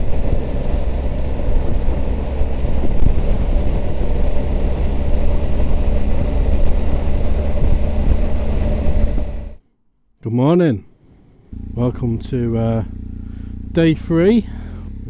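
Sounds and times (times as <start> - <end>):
motorcycle engine rumbling: 0.0 - 9.7, 11.4 - 15.0.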